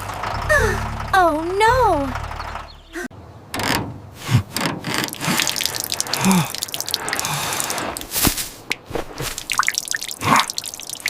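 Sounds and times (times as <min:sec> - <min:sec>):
liquid gushing and splashing: 0:05.0 - 0:11.0
drops plopping: 0:05.1 - 0:08.1, 0:08.7 - 0:11.0.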